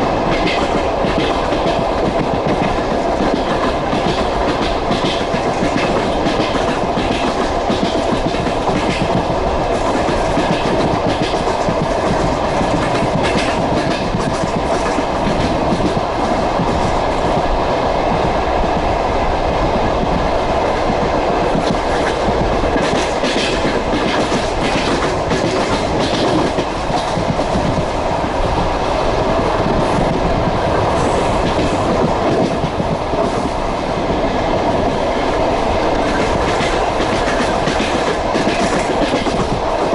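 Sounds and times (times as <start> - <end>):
train rumble on rails: 0.0 - 39.9
wheels clicking over rail joints: 0.3 - 17.5, 20.9 - 27.9, 35.8 - 39.9.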